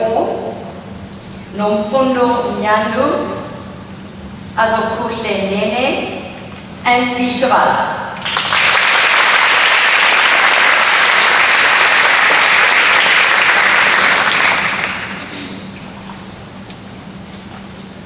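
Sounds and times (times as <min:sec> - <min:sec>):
audience clapping: 0:08.2 - 0:15.4.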